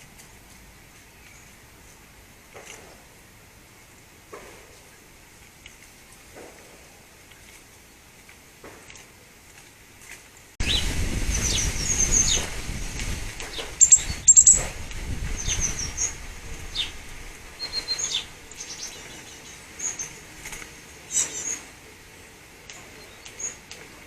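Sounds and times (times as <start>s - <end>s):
small birds chirping: 0.0s - 3.0s, 10.0s - 12.6s, 13.4s - 24.0s
wind buffeting microphone: 10.6s - 19.1s.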